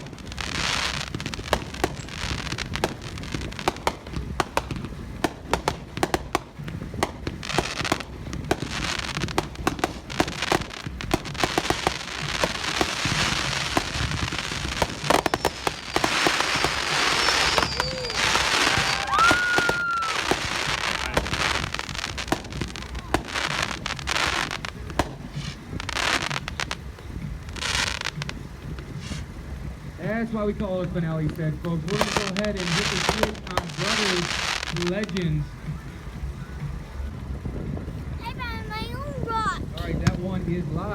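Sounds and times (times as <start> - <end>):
firework shell bursts: 0.0 - 26.6
firework crackle: 0.0 - 40.9
firework launch thumps: 38.2 - 40.3.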